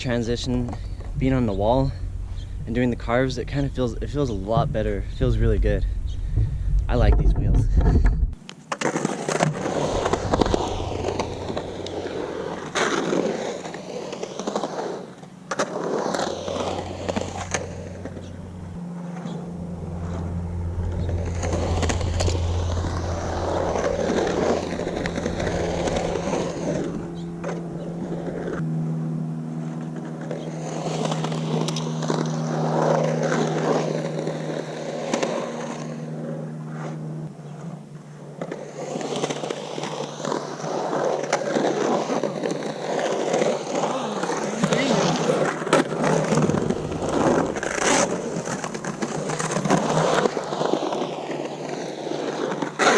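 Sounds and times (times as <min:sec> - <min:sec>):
skateboard rolling on concrete: 0:00.0 - 0:28.8, 0:29.4 - 0:52.9
skateboard clacks: 0:07.1 - 0:18.4, 0:38.4 - 0:52.9.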